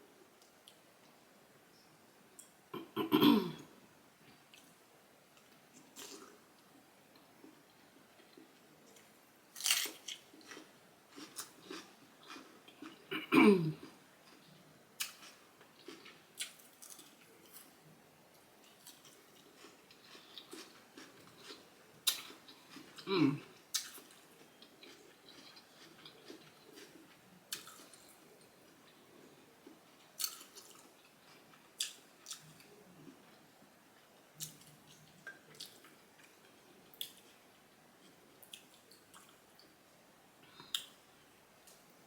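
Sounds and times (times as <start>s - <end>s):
close chewing: 8.2s - 13.1s, 18.6s - 23.1s, 23.7s - 28.1s.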